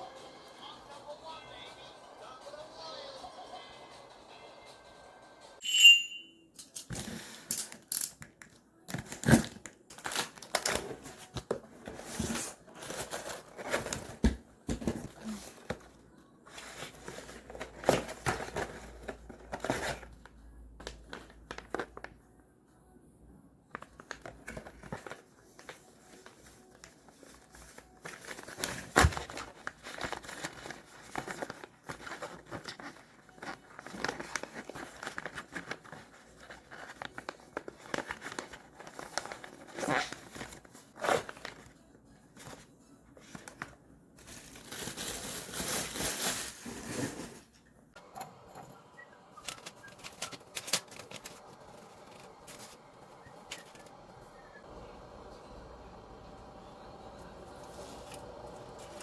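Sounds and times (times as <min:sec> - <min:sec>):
packaging crinkling and tearing: 0:08.9 - 0:14.1, 0:24.0 - 0:41.7, 0:43.3 - 0:47.2.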